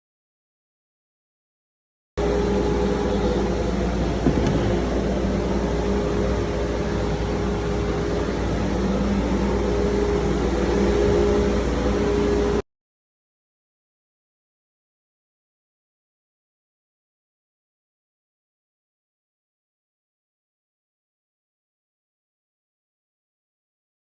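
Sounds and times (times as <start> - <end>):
machine humming: 2.2 - 12.6.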